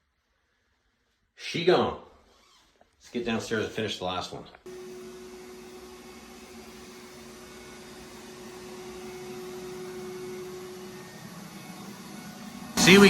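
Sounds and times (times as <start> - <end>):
mechanical hum and hiss: 4.7 - 13.0
held tone: 12.8 - 13.0.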